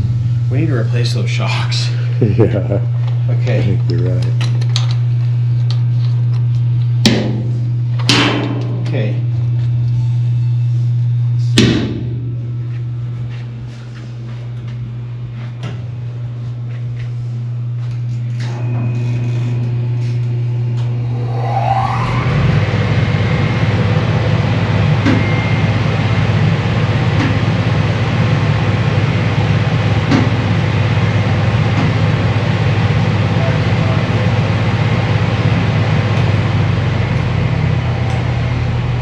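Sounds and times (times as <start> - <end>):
phase converter humming: 0.0 - 39.0
motor spinning up whine: 18.3 - 27.0.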